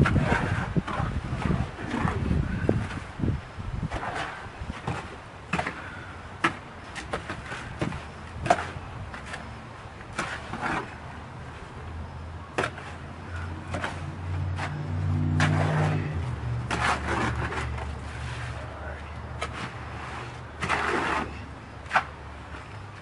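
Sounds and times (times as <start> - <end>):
low engine hum: 10.7 - 23.0.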